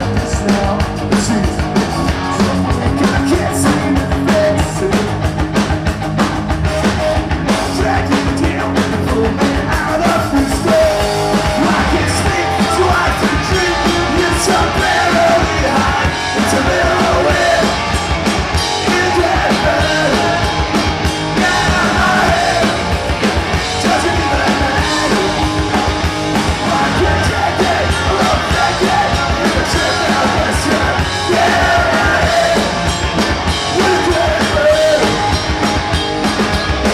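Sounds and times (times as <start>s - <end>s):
rock music: 0.0s - 36.9s
person singing: 21.4s - 23.0s, 23.6s - 25.8s, 26.6s - 33.0s.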